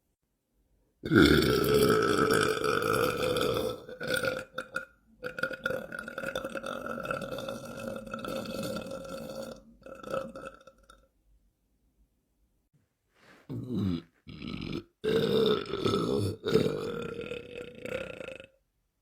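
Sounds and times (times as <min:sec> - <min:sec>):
man belching: 0:01.0 - 0:11.0, 0:13.5 - 0:18.6.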